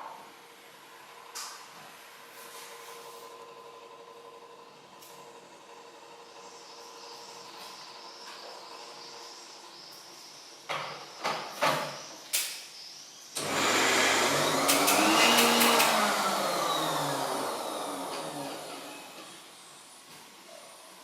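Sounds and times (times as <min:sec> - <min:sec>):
hair dryer blowing: 0:13.4 - 0:19.6.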